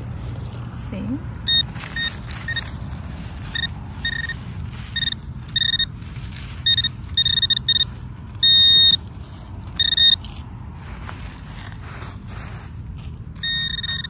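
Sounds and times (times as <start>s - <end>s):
metal detector beeping: 1.4s - 10.4s, 13.4s - 14.0s.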